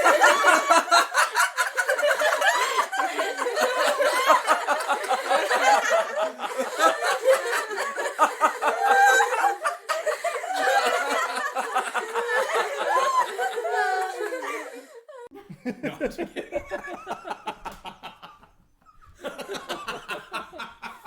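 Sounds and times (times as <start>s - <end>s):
studio audience laughing: 0.0s - 21.0s.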